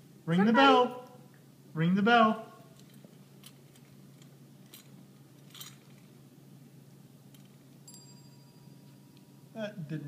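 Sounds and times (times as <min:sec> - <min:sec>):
steady low hum: 0:00.0 - 0:10.0
bell clinking and ringing: 0:07.8 - 0:09.3.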